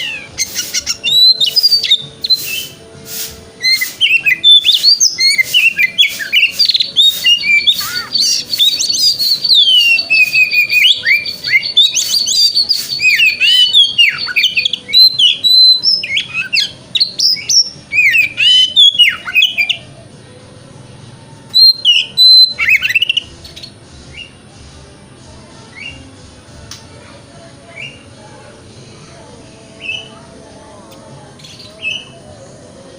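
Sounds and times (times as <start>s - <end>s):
songbird whistling song: 0.0s - 20.0s, 21.5s - 24.4s, 25.7s - 26.1s, 27.7s - 28.0s, 29.8s - 30.2s, 31.4s - 32.2s.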